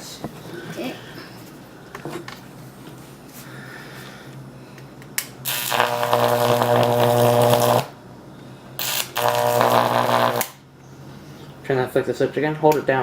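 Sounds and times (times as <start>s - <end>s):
electric arc buzzing: 5.2s - 8.0s, 8.8s - 10.7s.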